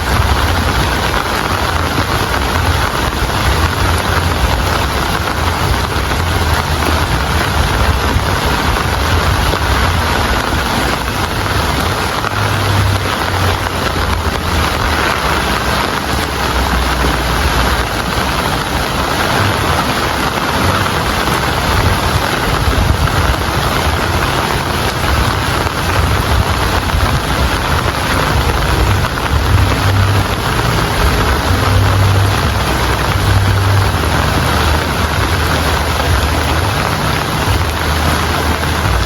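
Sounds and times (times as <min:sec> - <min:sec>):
low rumble: 0:00.0 - 0:39.0
steady rain falling: 0:00.0 - 0:39.0.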